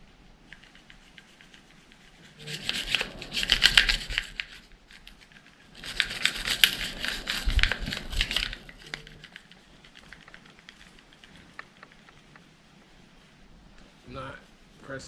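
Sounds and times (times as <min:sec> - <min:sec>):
scratchy scrubbing and rustling: 0:00.0 - 0:15.0.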